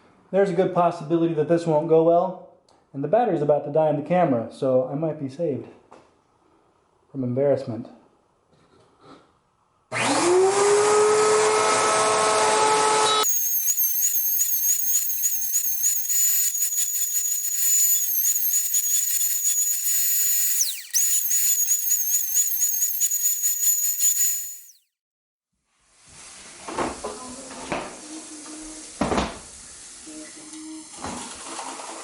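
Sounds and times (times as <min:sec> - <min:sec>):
power tool whine: 0:09.9 - 0:24.8
router motor whine: 0:10.0 - 0:24.8.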